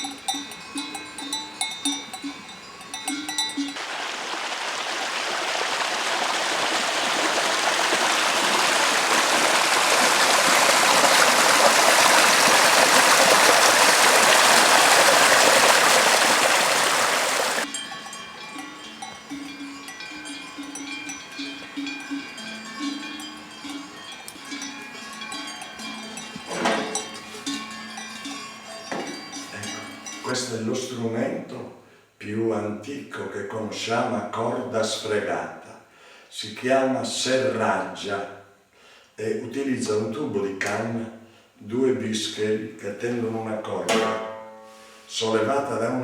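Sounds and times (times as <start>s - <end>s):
livestock bells jingling: 0.0s - 3.9s, 12.0s - 30.7s
sharp knocks: 43.9s - 44.5s.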